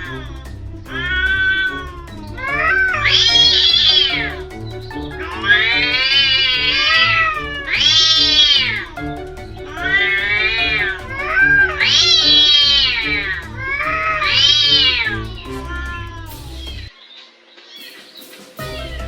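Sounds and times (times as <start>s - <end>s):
background music: 0.0s - 17.0s, 17.8s - 19.0s
cats yowling: 1.0s - 4.4s, 5.2s - 9.0s, 9.6s - 15.9s.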